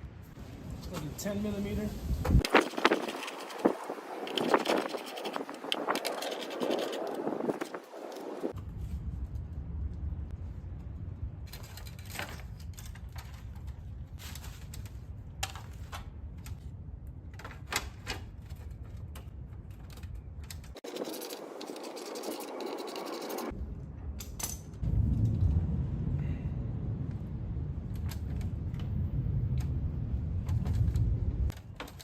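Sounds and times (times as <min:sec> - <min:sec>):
steady low rumble: 0:00.0 - 0:20.8, 0:23.4 - 0:31.6
small metal parts handled: 0:11.5 - 0:16.6, 0:17.4 - 0:23.5, 0:24.2 - 0:24.8.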